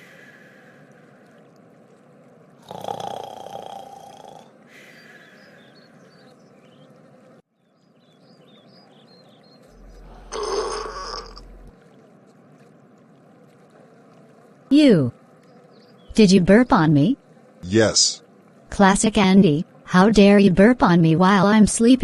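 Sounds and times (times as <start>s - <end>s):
loud drawn-out burp: 2.6s - 4.5s, 9.8s - 11.7s
person snoring: 2.7s - 4.5s, 9.9s - 11.7s.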